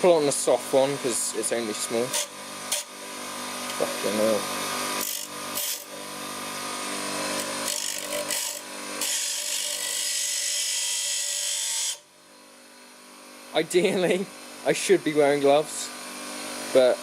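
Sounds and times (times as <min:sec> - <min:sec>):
bench grinder motor humming: 0:00.3 - 0:12.1.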